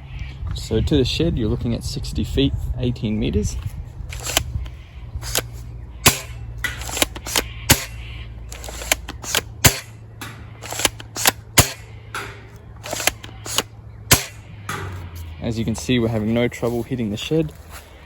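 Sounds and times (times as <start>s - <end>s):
pump action clicks: 4.1s - 9.9s, 10.6s - 11.8s, 12.8s - 14.4s
toy shotgun firing pops: 4.1s - 15.0s.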